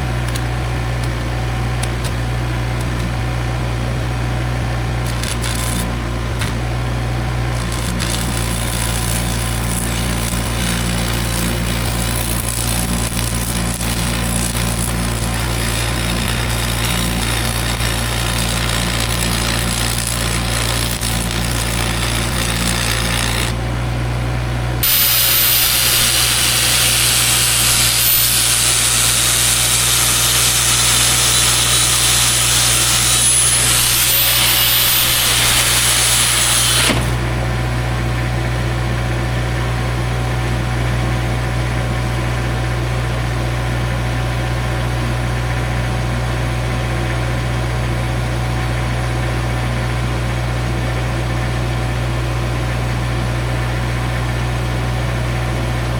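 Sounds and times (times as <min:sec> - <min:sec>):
angle grinder whining on metal: 0:00.0 - 0:23.8, 0:24.8 - 0:37.6.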